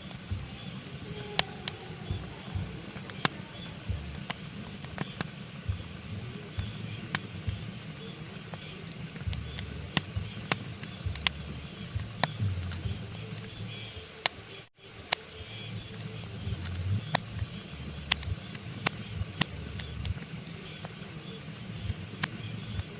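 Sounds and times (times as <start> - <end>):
flames rushing and hissing: 0.0 - 14.5, 15.1 - 22.9
logs crackling and popping in fire: 0.0 - 22.9.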